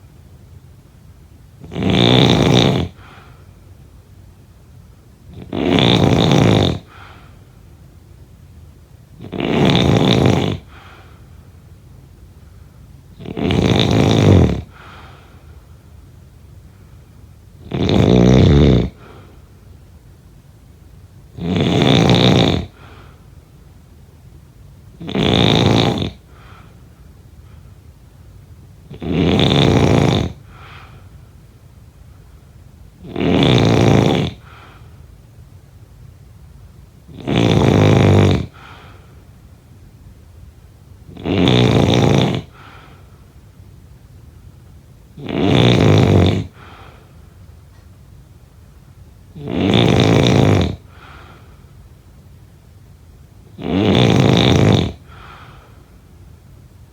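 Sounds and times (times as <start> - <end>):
person snoring: 1.6 - 3.1, 5.3 - 7.0, 9.2 - 10.8, 13.2 - 14.8, 17.6 - 19.2, 21.4 - 22.9, 25.0 - 26.2, 28.9 - 30.7, 33.0 - 34.7, 37.1 - 38.9, 41.1 - 42.8, 45.2 - 47.0, 49.4 - 51.4, 53.6 - 55.6
faint soft breath sound: 2.3 - 3.7, 5.8 - 7.8, 9.4 - 11.7, 13.8 - 17.3, 22.6 - 23.6, 26.2 - 28.0, 29.6 - 32.7, 34.4 - 35.2, 38.4 - 39.5, 41.9 - 43.6, 46.4 - 47.9, 50.3 - 52.0, 54.4 - 56.4.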